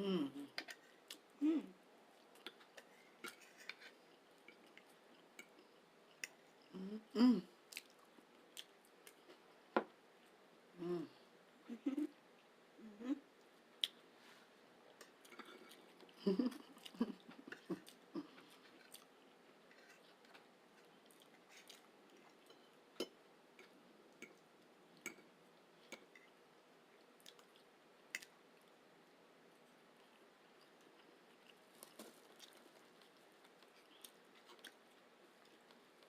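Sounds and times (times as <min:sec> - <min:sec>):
close chewing and mouth sounds: 0:02.1 - 0:06.7, 0:07.6 - 0:10.4, 0:14.8 - 0:36.0.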